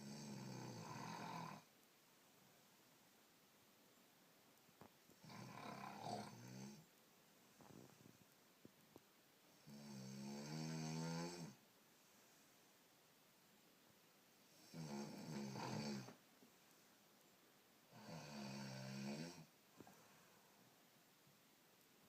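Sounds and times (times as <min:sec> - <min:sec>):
person snoring: 0:00.0 - 0:01.7, 0:05.2 - 0:06.8, 0:09.6 - 0:11.6, 0:14.6 - 0:16.2, 0:17.9 - 0:19.5.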